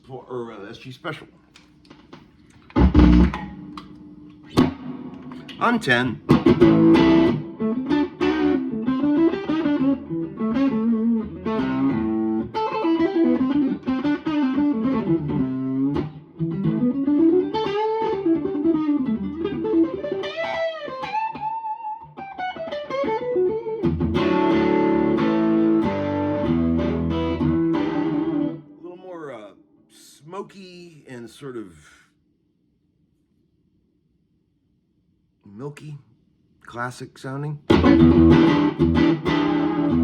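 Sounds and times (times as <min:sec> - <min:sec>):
electric guitar riff with bends: 0:02.7 - 0:03.8, 0:04.4 - 0:28.8, 0:37.7 - 0:40.0
electric guitar chords: 0:02.7 - 0:28.8, 0:37.7 - 0:40.0.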